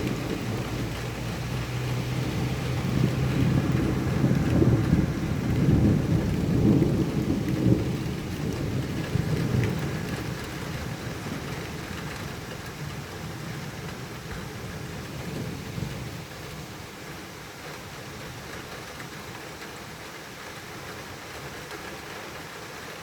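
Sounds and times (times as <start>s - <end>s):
thunder rolling: 0.0s - 11.9s
steady rain: 0.0s - 23.0s.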